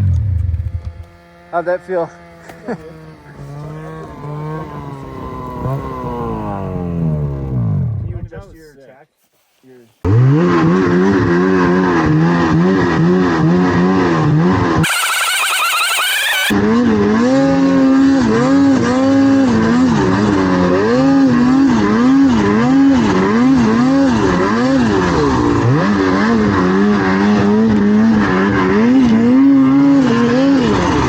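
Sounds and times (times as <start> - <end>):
snowmobile engine revving: 0.0 - 8.6, 10.0 - 31.0
high rising engine whine: 14.8 - 16.6.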